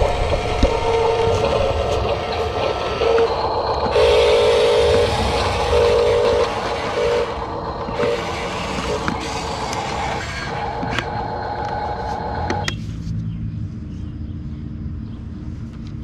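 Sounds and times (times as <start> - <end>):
steady mechanical hiss: 0.0 - 12.6
small electric motors whining: 0.0 - 12.7.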